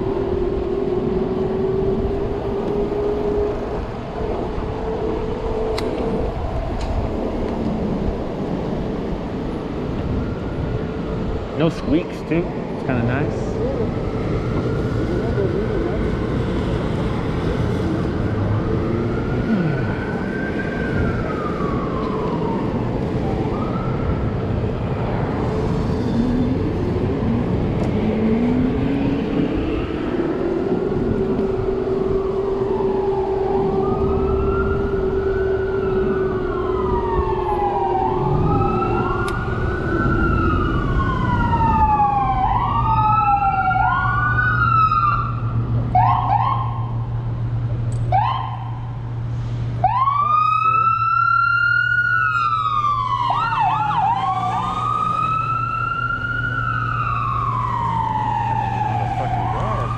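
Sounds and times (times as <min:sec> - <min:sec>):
emergency vehicle siren wailing: 0:00.0 - 0:59.9
road and wind noise: 0:00.0 - 0:59.9.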